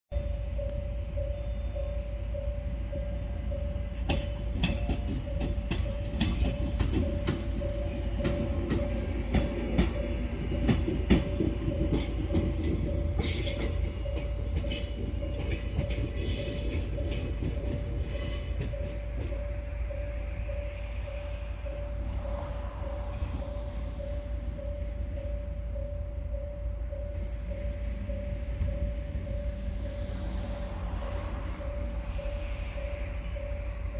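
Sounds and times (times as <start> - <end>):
level crossing warning bell: 0.1 - 33.9
train rolling: 0.1 - 33.9
wheels clacking over rail joints: 3.5 - 20.8
shrill wheel squeal: 11.3 - 21.3.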